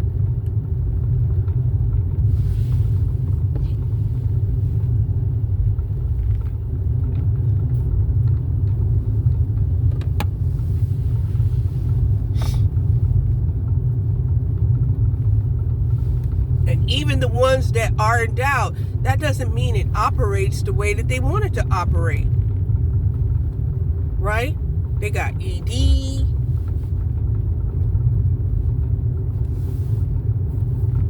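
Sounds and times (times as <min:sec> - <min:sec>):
car interior road rumble: 0:00.0 - 0:31.0.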